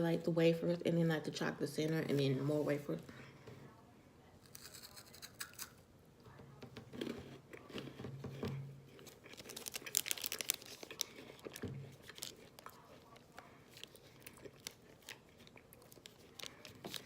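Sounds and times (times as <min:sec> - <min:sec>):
wafer bar crunching when chewed: 0:08.9 - 0:17.0.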